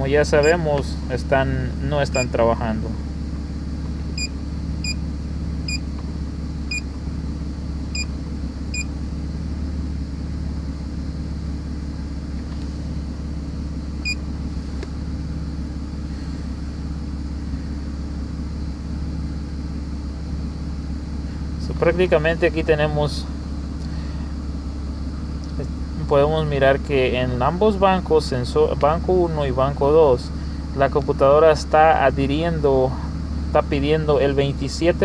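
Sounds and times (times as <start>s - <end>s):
car engine idling: 0.0s - 35.0s
short electronic beeps: 0.4s - 0.7s, 4.2s - 5.0s.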